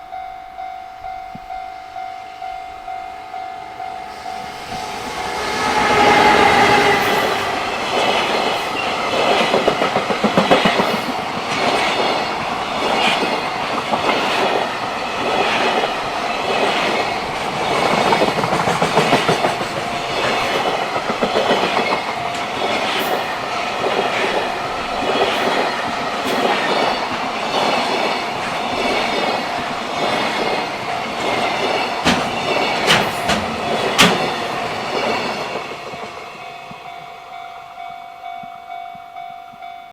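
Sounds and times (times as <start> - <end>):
steady ringing tone: 0.0 - 7.4
train wagons clattering over rails: 3.6 - 37.1.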